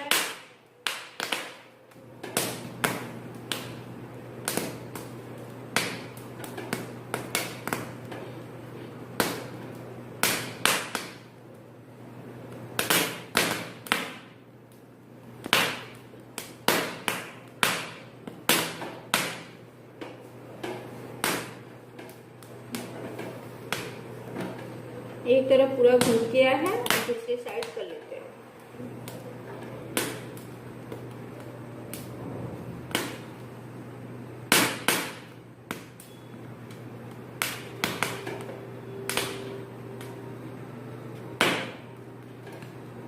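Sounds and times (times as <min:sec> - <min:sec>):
corn kernels cracking and popping: 0:00.0 - 0:08.2, 0:09.1 - 0:11.3, 0:12.4 - 0:19.6, 0:28.9 - 0:33.6, 0:34.4 - 0:40.2
low steady hum: 0:00.0 - 0:43.0.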